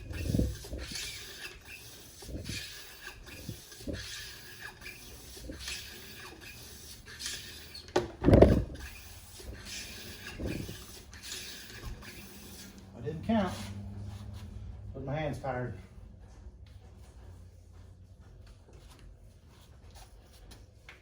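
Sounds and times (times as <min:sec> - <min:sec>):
cleaning rod scraping in rifle bore: 0:00.1 - 0:07.9, 0:08.5 - 0:13.8.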